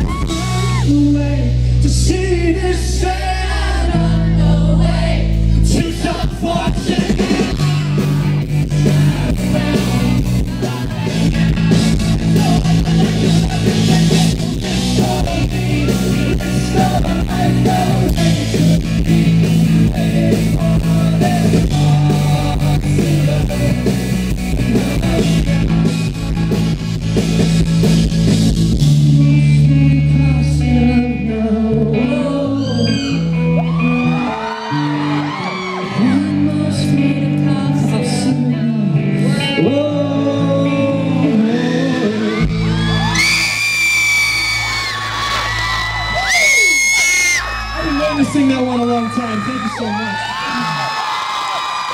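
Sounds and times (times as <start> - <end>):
person singing: 0.0 - 26.6, 28.9 - 42.9
rock band playing: 0.0 - 51.9
drumming: 6.2 - 28.9.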